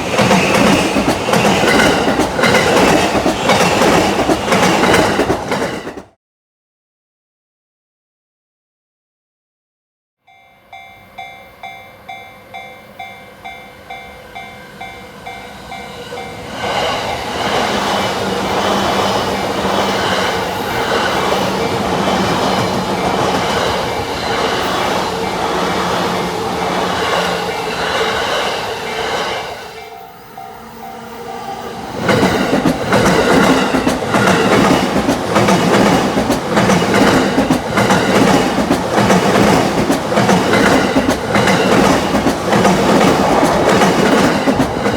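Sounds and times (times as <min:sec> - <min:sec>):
electric train passing: 0:00.0 - 0:06.1, 0:10.6 - 0:44.9
train wheels clattering over rail joints: 0:00.0 - 0:06.1, 0:32.0 - 0:44.9
level crossing warning bell: 0:10.3 - 0:16.5, 0:29.8 - 0:31.9.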